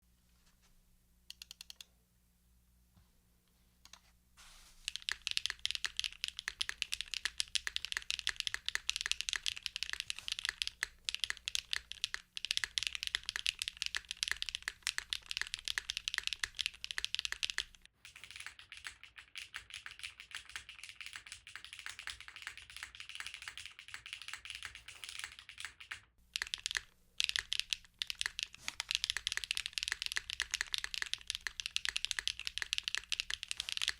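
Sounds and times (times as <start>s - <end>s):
mechanical keyboard typing: 1.3s - 1.9s, 4.8s - 33.9s.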